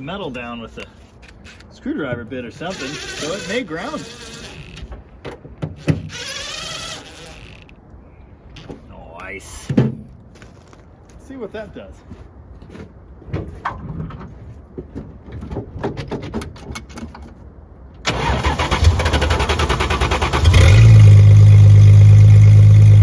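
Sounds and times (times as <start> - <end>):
car engine idling: 18.1 - 23.0
starter cranking engine: 18.1 - 23.0.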